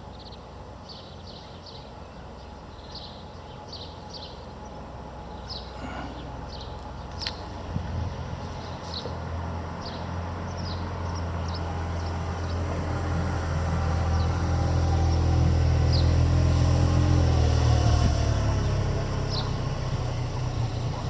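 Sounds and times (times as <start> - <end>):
vehicle engine approaching: 0.9 - 21.0.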